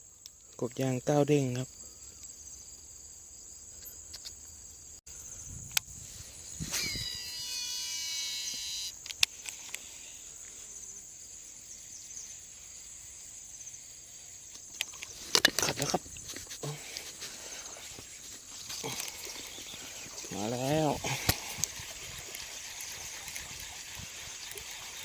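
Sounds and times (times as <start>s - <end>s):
insects chirring: 0.0s - 25.0s
whirring falling in pitch: 6.7s - 9.0s
sharp clicks: 8.9s - 9.8s.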